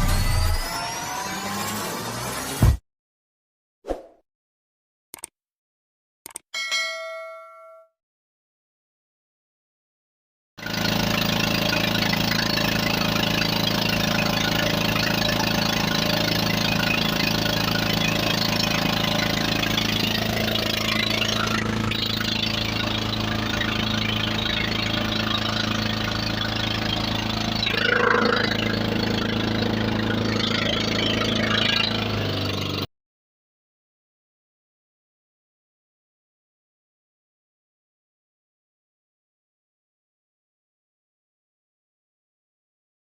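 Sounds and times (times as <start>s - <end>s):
boat engine running: 10.6s - 32.9s
short higher sound: 27.7s - 29.2s.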